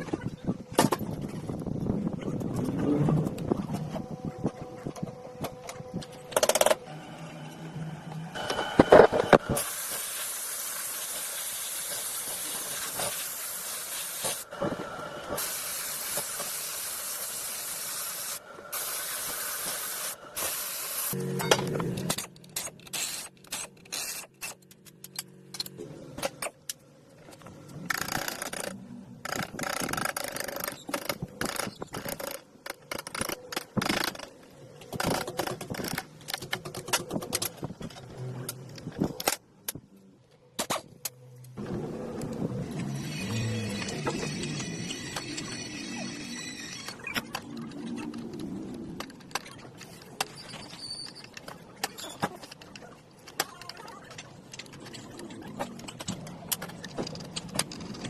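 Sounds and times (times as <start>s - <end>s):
low mechanical hum: 0.0s - 9.9s, 18.0s - 58.0s
clicks and knocks of tools: 21.4s - 28.7s.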